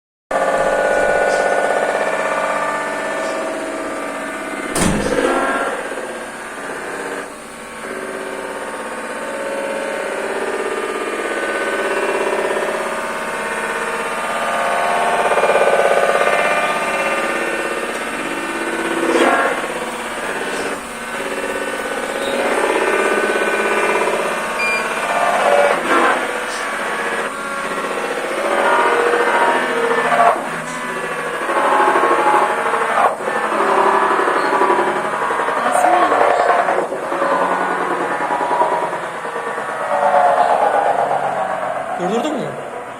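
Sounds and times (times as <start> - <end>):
washing machine spinning: 0.3 - 42.9
washing machine drum rattling: 0.6 - 6.6
sharp loud knock: 4.7 - 5.6.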